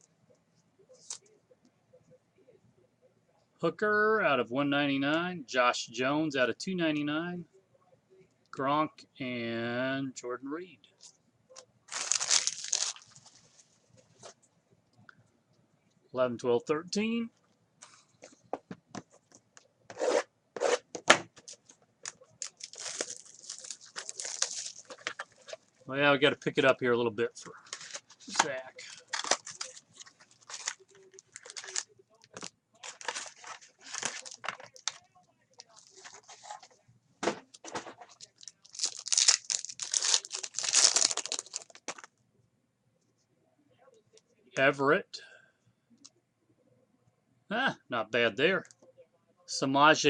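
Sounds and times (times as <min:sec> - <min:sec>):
wrapper rustling and tearing: 0:11.9 - 0:13.5, 0:21.5 - 0:25.6, 0:27.6 - 0:35.0, 0:38.1 - 0:42.1.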